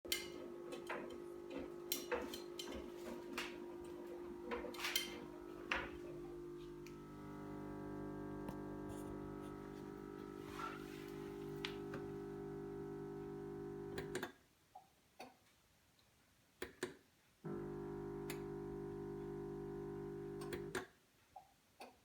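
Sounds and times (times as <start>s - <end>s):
washing machine humming: 0.0s - 14.2s, 17.5s - 20.8s.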